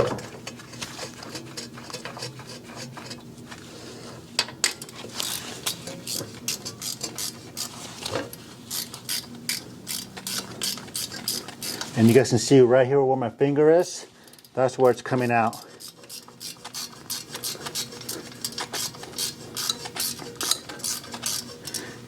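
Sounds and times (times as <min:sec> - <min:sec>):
ratchet wrench clicking: 0:08.7 - 0:11.8, 0:15.5 - 0:21.8.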